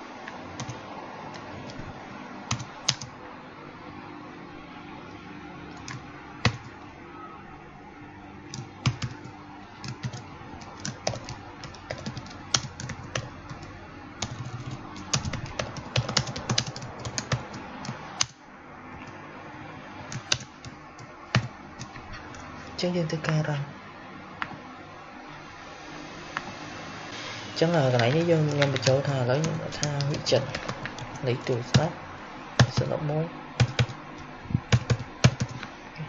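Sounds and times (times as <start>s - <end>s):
keyboard typing: 0.6s - 1.9s, 2.5s - 3.2s, 5.1s - 6.8s, 8.4s - 19.2s, 20.1s - 22.8s, 27.8s - 32.0s, 32.6s - 33.0s, 33.6s - 35.7s.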